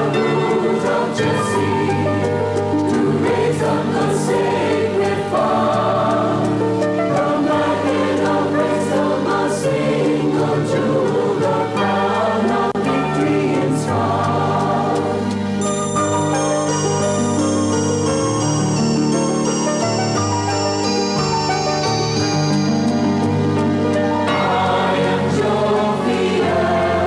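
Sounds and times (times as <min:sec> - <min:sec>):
congregation singing a hymn: 0:00.0 - 0:19.6, 0:20.8 - 0:27.0.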